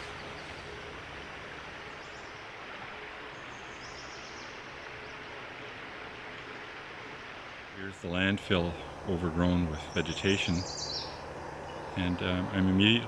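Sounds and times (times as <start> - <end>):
floodwater rushing over ground: 0.0 - 13.0
faint high bird chirps: 9.9 - 11.9.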